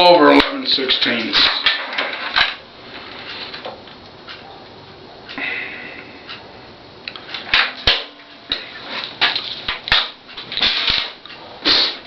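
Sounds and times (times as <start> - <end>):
metal parts clicking and knocking: 0.3 - 2.6.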